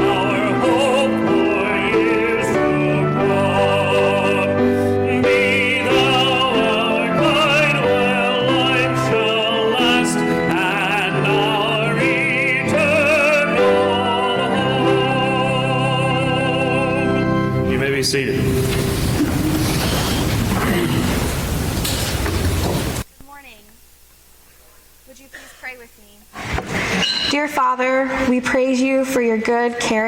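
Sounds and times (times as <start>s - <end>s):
person singing with vibrato: 0.0s - 17.7s
hymn accompaniment chords: 0.0s - 19.4s.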